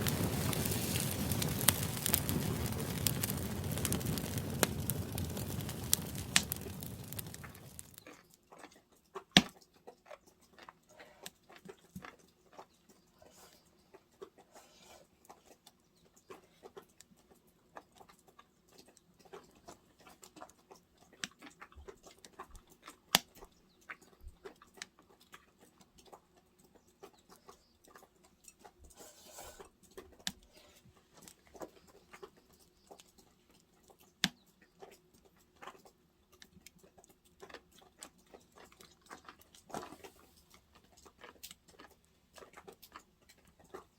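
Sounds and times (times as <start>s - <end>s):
wood fire crackling: 0.0s - 8.0s.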